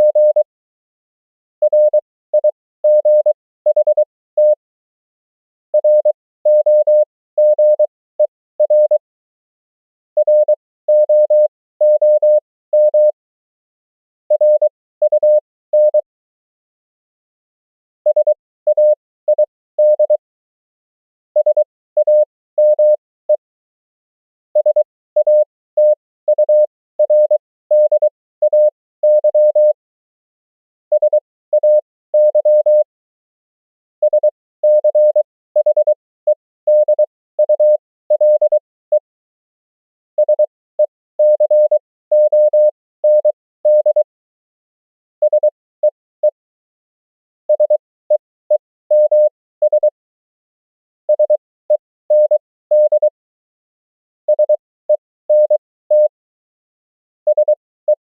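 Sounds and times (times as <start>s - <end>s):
morse code beeps: 0.0s - 0.5s, 1.6s - 4.6s, 5.8s - 9.0s, 10.2s - 13.2s, 14.3s - 16.1s, 18.1s - 20.2s, 21.4s - 23.4s, 24.6s - 29.8s, 30.9s - 32.9s, 34.0s - 39.0s, 40.2s - 44.0s, 45.2s - 46.4s, 47.5s - 50.0s, 51.1s - 53.2s, 54.3s - 56.2s, 57.3s - 58.0s.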